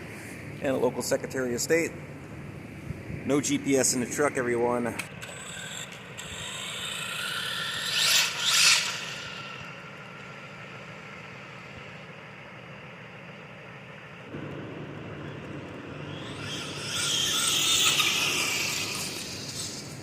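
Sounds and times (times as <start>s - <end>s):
toy car motor and tyres on asphalt: 5.0s - 11.9s, 16.0s - 20.0s.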